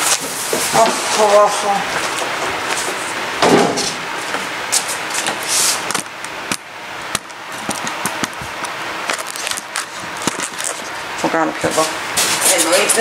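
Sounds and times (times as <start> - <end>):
packing materials rustling: 7.2 - 11.0.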